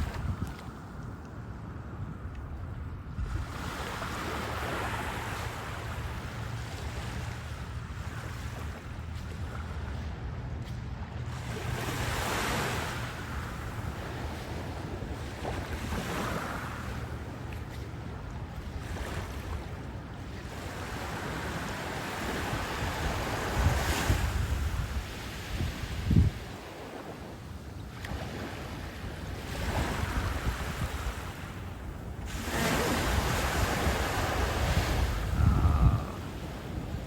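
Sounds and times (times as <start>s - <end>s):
wind buffeting microphone: 0.0s - 37.0s
ocean surf breaking: 11.4s - 37.0s.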